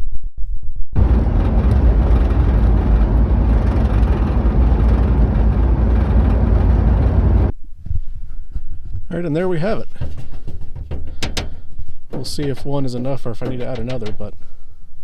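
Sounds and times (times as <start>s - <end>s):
car engine and road noise: 1.0s - 7.6s.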